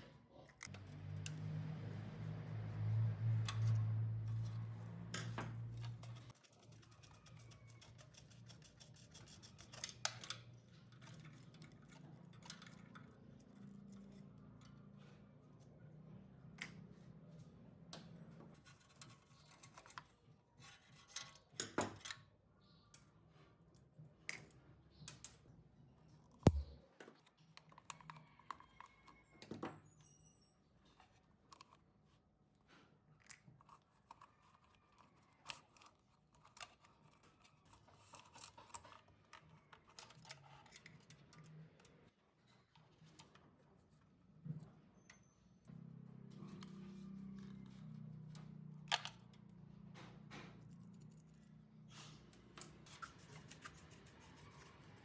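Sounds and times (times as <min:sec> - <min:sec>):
sharp knock: 0:26.5 - 0:26.8.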